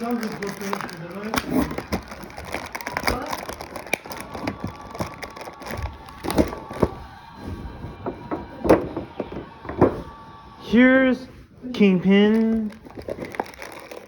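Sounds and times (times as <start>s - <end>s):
plastic packaging crackling: 0.0s - 10.2s, 11.8s - 14.0s.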